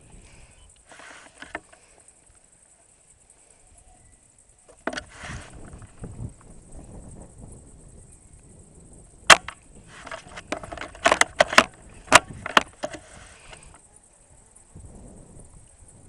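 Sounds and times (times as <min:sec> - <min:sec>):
rifle bolt clicks and clacks: 0:09.3 - 0:13.1.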